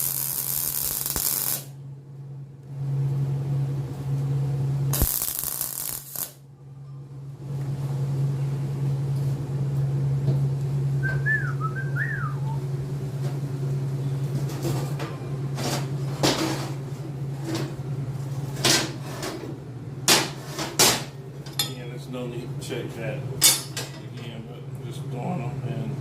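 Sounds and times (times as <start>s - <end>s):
steady low hum: 0.0s - 26.0s
two-note whistle: 11.0s - 12.6s.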